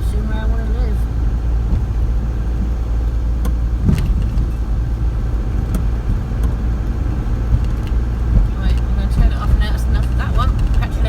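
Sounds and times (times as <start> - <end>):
vehicle driving rumble: 0.0 - 11.0
sharp clicks or rattles: 5.6 - 9.6.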